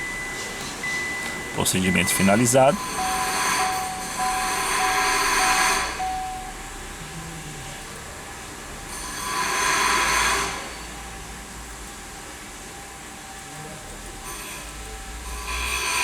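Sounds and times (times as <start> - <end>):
repeating electronic beep: 0.0 - 6.6
hissing whirring power tool: 0.0 - 7.0, 7.6 - 16.0.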